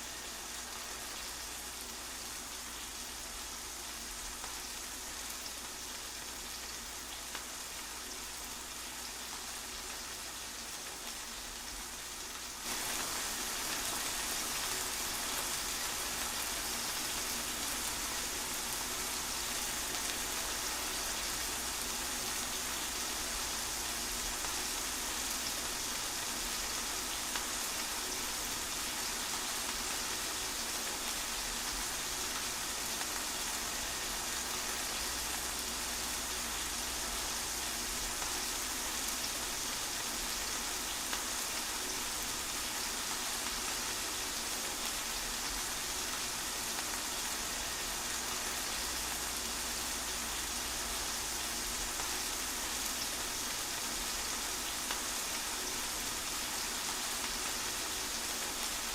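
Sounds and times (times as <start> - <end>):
steady rain hiss: 0.0 - 58.9.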